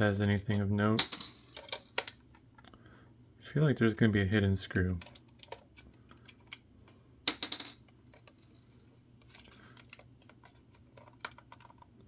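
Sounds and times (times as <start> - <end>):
plastic clicks and rattle: 9.2 - 12.0.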